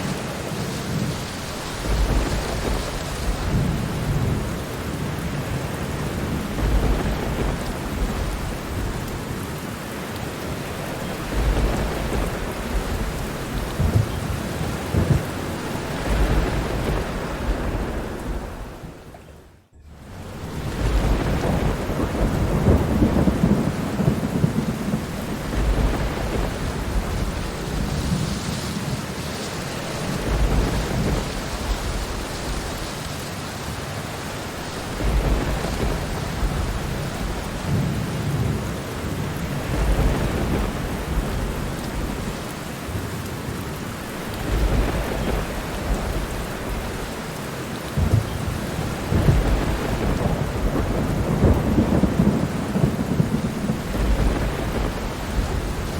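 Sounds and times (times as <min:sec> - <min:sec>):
steady rain falling: 0:00.0 - 0:55.9
thunder rumbling: 0:00.0 - 0:55.9.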